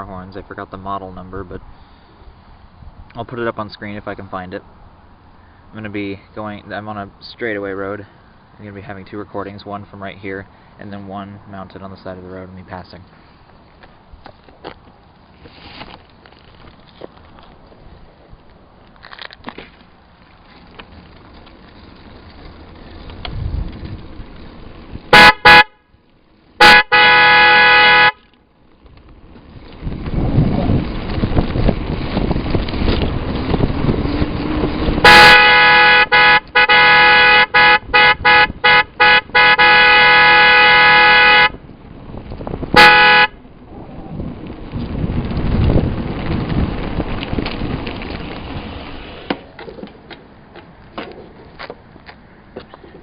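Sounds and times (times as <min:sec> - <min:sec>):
two-tone electric horn blasts: 0:25.1 - 0:25.9, 0:26.6 - 0:28.3, 0:34.9 - 0:41.6, 0:42.7 - 0:43.4.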